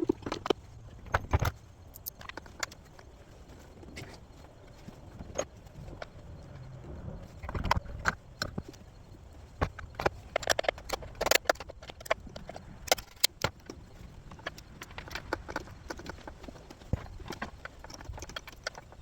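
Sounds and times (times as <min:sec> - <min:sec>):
hand tools clicking and knocking: 0:09.4 - 0:19.0.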